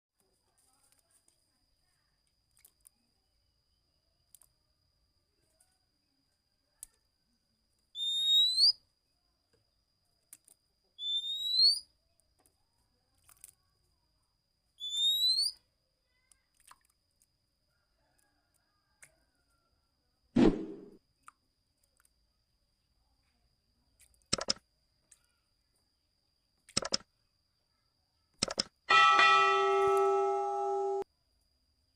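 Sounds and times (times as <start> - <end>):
bird rising whistled calls: 8.0 - 8.8, 11.0 - 11.8, 14.8 - 15.6.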